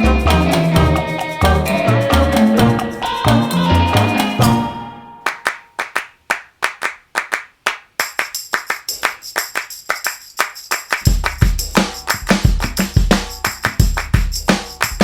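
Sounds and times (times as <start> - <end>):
heavy bass beat: 0.0 - 4.6, 11.1 - 15.0
high shaker: 0.0 - 4.6, 8.0 - 15.0
handclaps: 5.2 - 15.0.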